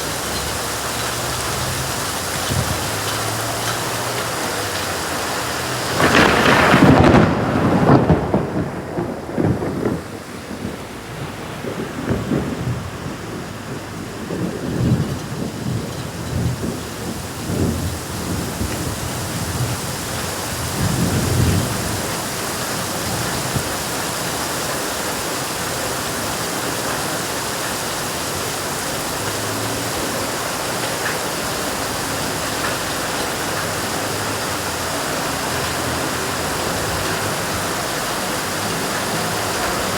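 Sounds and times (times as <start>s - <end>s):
heavy rain hissing: 0.0s - 39.9s
thunder crack and rumbles: 0.2s - 24.8s.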